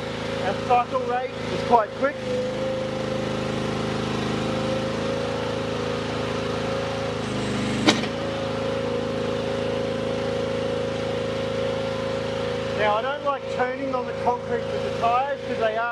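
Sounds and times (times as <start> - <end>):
hydraulic whine: 0.0 - 15.9
petrol engine running: 0.0 - 15.9
sharp metal clank: 7.8 - 8.2.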